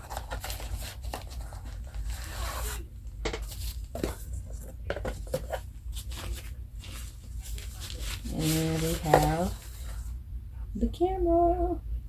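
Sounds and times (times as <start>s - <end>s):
packaging rustling and tearing: 0.0s - 2.8s, 5.1s - 10.0s.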